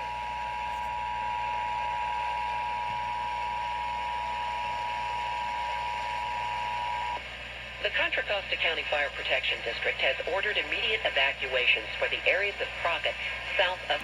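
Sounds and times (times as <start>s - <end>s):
emergency alert two-tone signal: 0.0s - 7.2s
radio static hiss: 7.8s - 14.0s.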